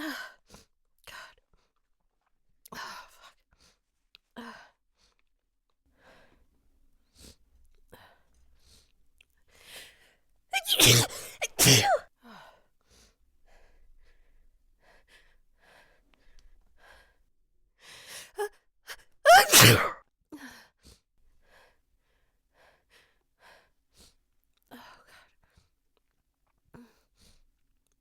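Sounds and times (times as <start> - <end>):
woman sneezing: 10.6 - 12.0, 19.3 - 20.0.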